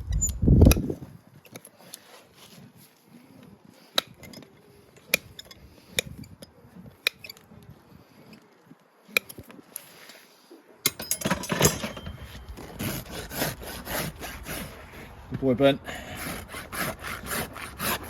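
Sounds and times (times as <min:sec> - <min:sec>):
hoof rasp rubbing: 0:11.7 - 0:15.3, 0:15.9 - 0:18.0.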